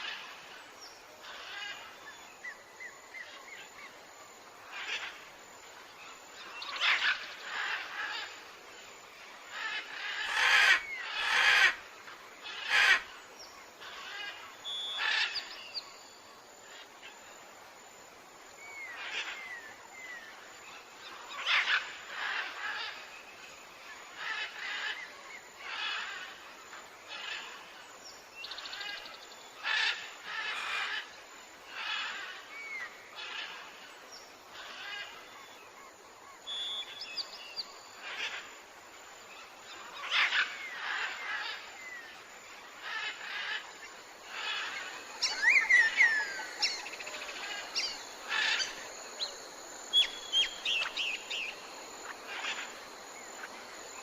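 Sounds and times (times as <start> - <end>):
insects chorus: 0.0 - 54.0
birds calling and chirping: 39.3 - 54.0.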